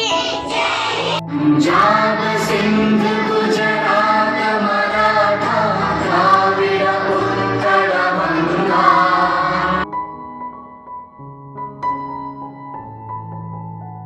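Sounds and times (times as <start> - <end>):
children singing in unison: 0.0 - 9.8.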